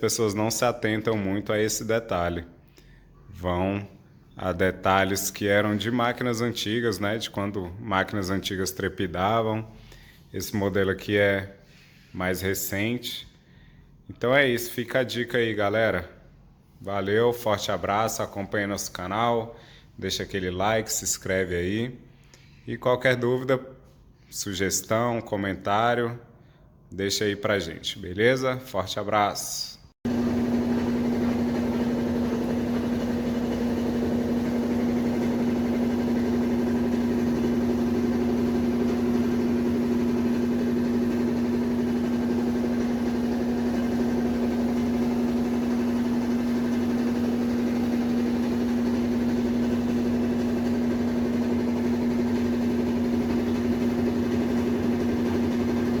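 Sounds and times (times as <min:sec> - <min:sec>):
washing machine motor hum: 0:30.0 - 0:56.0.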